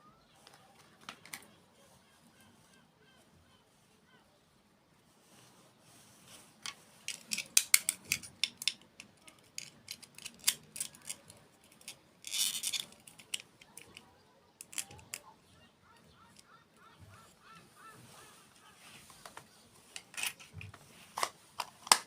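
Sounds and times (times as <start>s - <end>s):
faint squeaky chirps: 0.0s - 0.9s, 13.6s - 19.8s.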